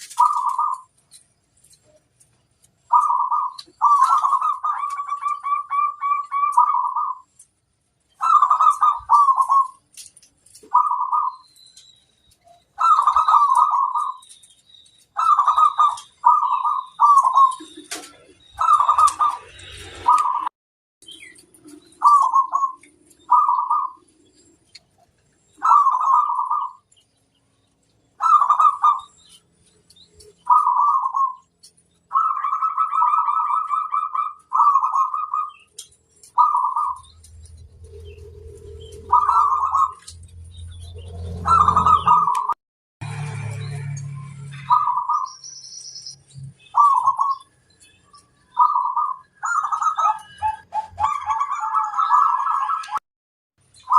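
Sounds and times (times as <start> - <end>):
dove cooing trills: 0.0 - 1.0, 2.8 - 7.4, 8.1 - 10.0, 10.6 - 11.5, 12.6 - 14.4, 15.1 - 20.5, 21.2 - 26.9, 28.2 - 29.5, 30.2 - 40.2, 40.9 - 42.6, 44.3 - 45.4, 46.6 - 53.0.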